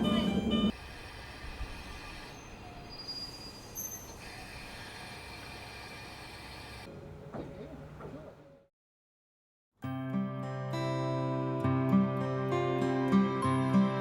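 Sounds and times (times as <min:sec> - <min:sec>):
train rumbling: 0:00.0 - 0:04.4
train wheel squeals: 0:01.8 - 0:05.0.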